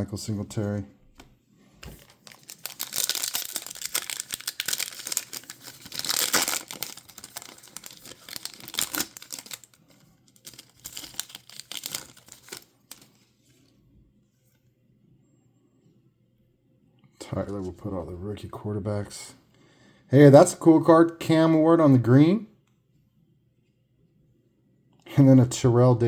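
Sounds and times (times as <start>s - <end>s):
card pack wrapper tearing and crinkling: 1.8s - 13.2s.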